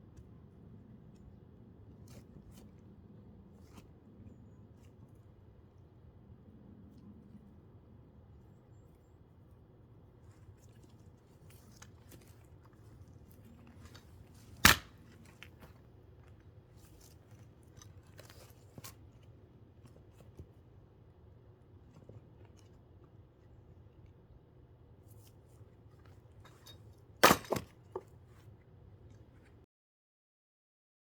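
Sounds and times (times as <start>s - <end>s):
axe striking log: 14.6s - 15.0s, 27.2s - 27.8s.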